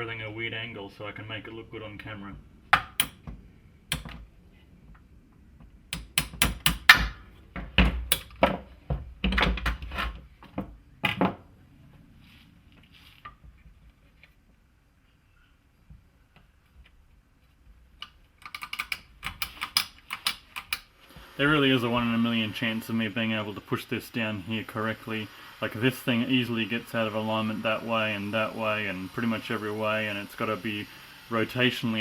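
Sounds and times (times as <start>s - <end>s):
metal nailer parts clicking: 3.9s - 4.2s, 8.0s - 8.4s, 18.0s - 20.9s.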